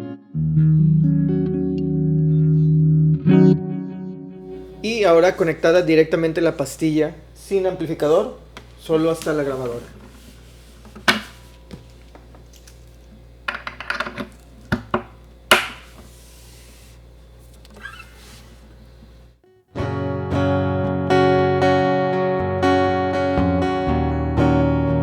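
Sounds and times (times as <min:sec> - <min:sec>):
low electrical hum: 0:04.4 - 0:19.4
handling clicks and knocks: 0:13.5 - 0:16.0
acoustic guitar strummed: 0:19.4 - 0:25.0.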